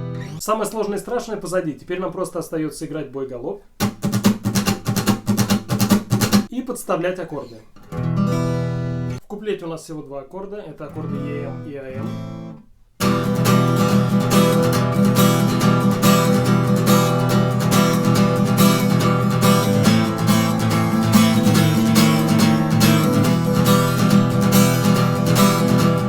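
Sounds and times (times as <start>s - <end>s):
acoustic guitar strumming: 0.0s - 0.4s, 3.8s - 6.5s, 7.8s - 9.2s, 10.9s - 26.0s.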